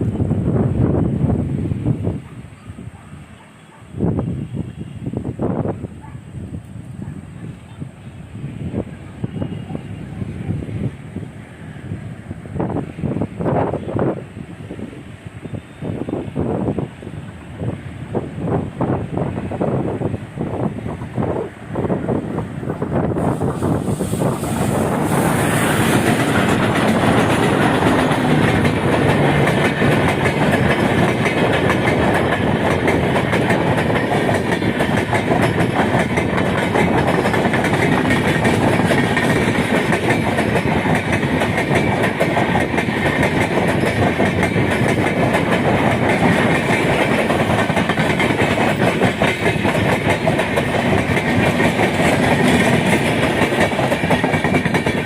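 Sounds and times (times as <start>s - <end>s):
train wheels rumbling on rails: 0.0s - 55.0s
clickety-clack over rail joints: 23.8s - 55.0s.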